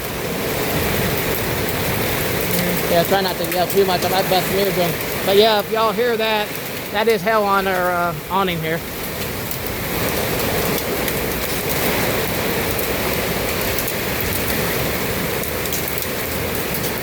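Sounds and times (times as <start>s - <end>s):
hailstones ticking: 0.0s - 17.0s
heavy rain on awning: 0.0s - 17.0s.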